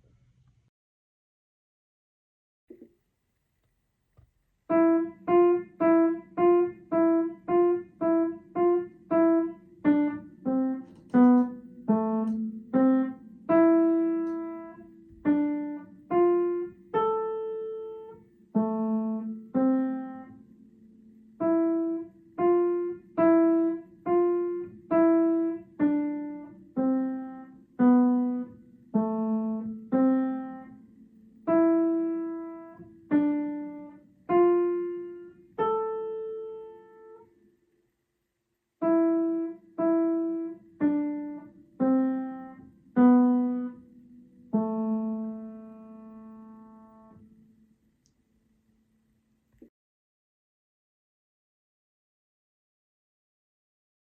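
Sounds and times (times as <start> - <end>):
piano melody: 4.7 - 37.3, 38.8 - 47.7.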